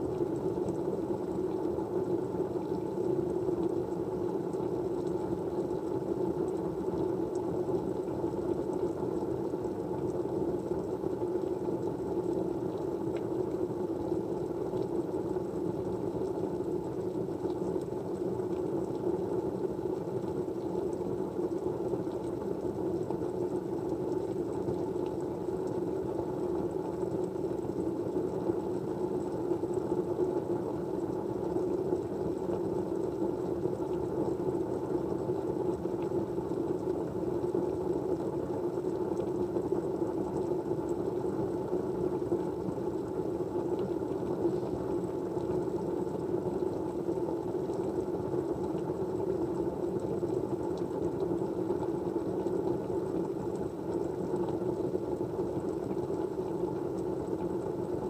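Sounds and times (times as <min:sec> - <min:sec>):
white noise hiss: 0:00.0 - 0:58.0.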